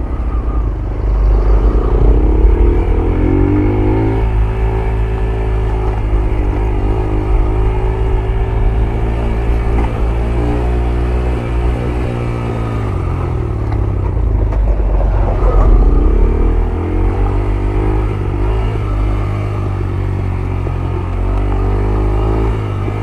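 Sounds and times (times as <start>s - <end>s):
motorcycle engine running: 0.0s - 23.0s.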